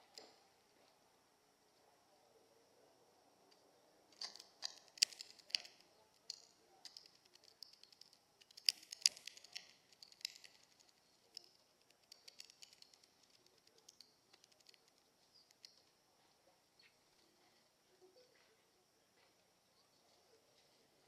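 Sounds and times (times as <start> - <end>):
faint steady high tone: 0.0 - 21.0
bird clicks and raspy calls: 4.1 - 16.0.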